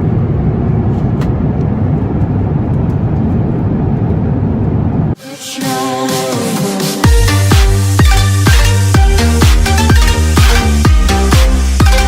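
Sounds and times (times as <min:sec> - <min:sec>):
jet engine rumble in cabin: 0:00.0 - 0:05.2.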